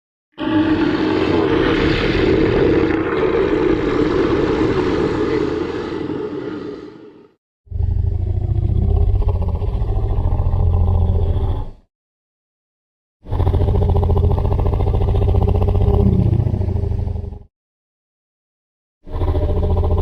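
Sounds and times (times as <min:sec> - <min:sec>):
dinosaur roar: 0:00.3 - 0:11.8, 0:13.3 - 0:17.5, 0:19.1 - 0:20.0.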